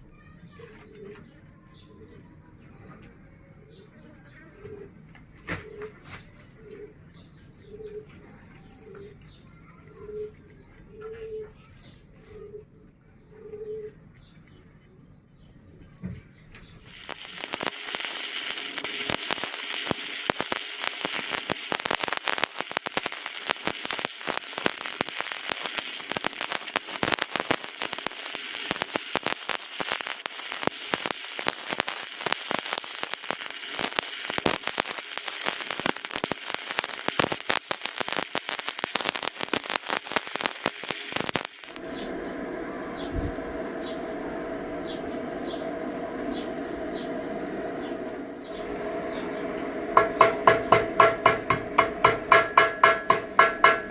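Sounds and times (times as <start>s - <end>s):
pigeon cooing: 5.6s - 7.0s, 10.0s - 11.6s, 12.2s - 12.7s, 13.3s - 14.0s
welding arc crackling and hissing: 16.8s - 42.1s.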